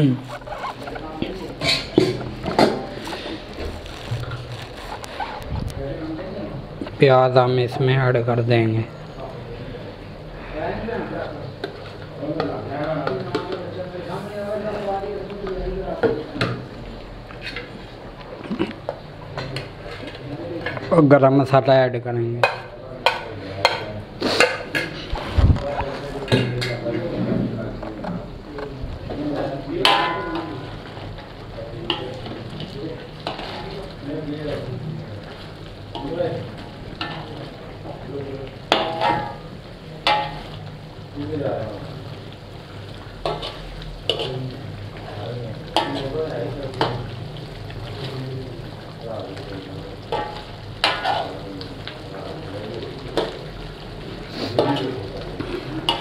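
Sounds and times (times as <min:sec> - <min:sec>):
spoon stirring in a pot: 0:00.0 - 0:05.4, 0:31.9 - 0:34.6, 0:38.7 - 0:40.6, 0:43.2 - 0:48.2, 0:50.0 - 0:51.4, 0:54.5 - 0:56.0
low sizzle: 0:00.0 - 0:56.0
food sizzling in oil: 0:28.3 - 0:56.0.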